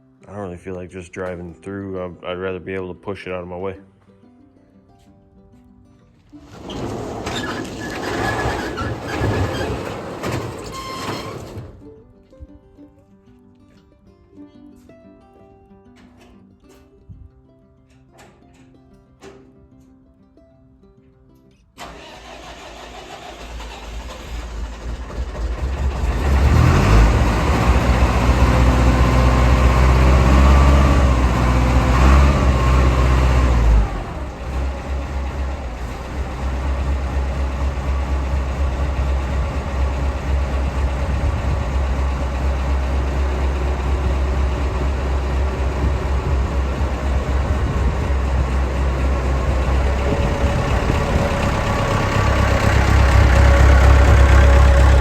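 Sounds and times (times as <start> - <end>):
tractor engine running: 6.4 - 11.8, 21.8 - 55.0.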